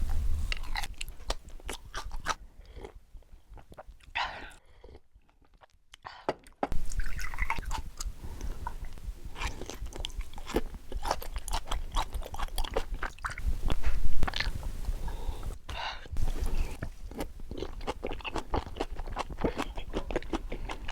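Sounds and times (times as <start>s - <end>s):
close chewing with mouth clicks: 0.1s - 20.9s.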